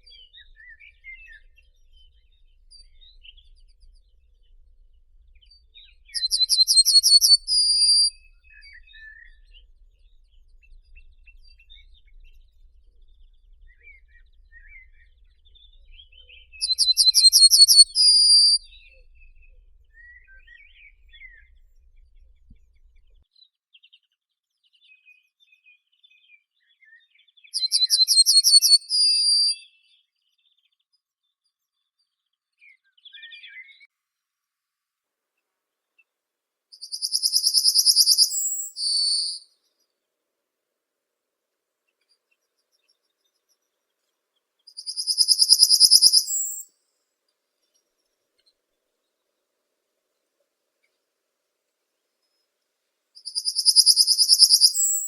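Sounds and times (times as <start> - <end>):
faint bird chirps: 0.0 - 33.9, 36.7 - 40.0, 41.8 - 51.1, 53.2 - 55.0
songbird trilling: 6.1 - 9.4, 16.2 - 18.9, 27.6 - 29.6, 36.8 - 39.4, 44.7 - 46.6, 53.2 - 55.0.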